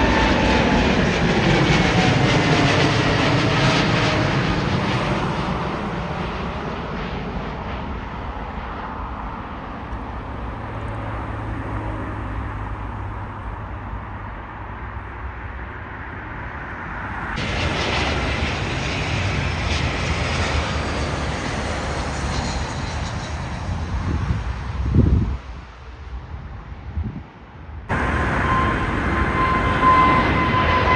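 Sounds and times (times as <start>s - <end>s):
jet airliner engine noise: 0.0s - 30.9s
sudden loud rushing noise: 17.3s - 25.0s, 27.9s - 30.9s.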